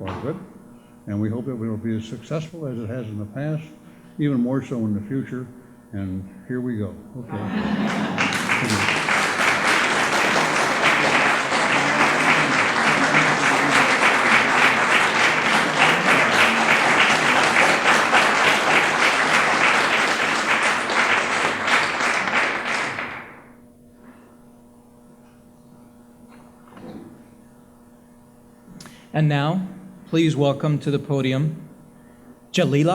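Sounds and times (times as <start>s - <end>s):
faint hum: 0.0s - 32.9s
audience applauding: 7.3s - 23.5s.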